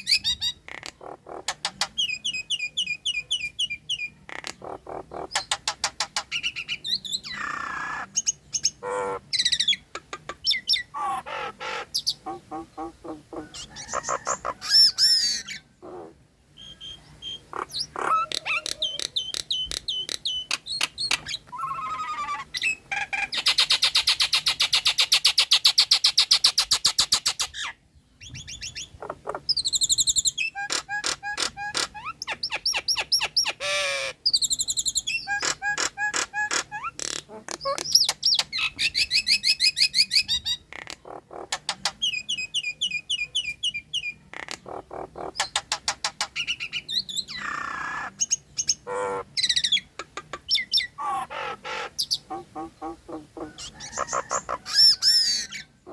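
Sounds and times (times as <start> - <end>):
myna singing whistles and squawks: 10.4 - 15.7, 16.6 - 40.6, 41.4 - 49.9, 50.5 - 55.9.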